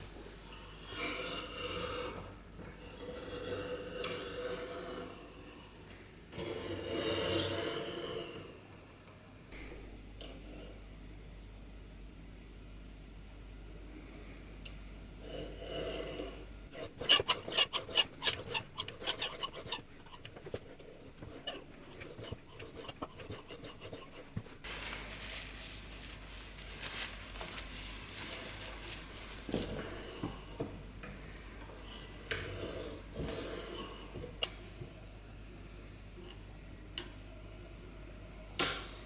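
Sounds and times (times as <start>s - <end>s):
boom arm rubbing and scraping: 16.7s - 24.6s.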